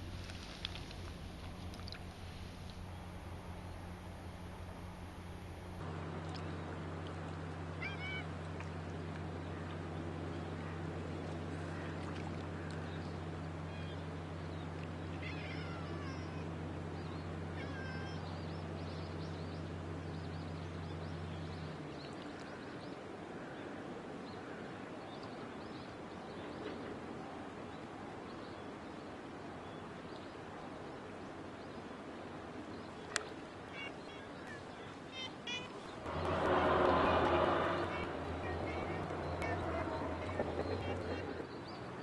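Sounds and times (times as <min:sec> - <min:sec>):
low hum: 0:00.0 - 0:21.9, 0:35.7 - 0:41.8
cat meowing: 0:07.8 - 0:08.3
steady rushing background: 0:36.0 - 0:41.3.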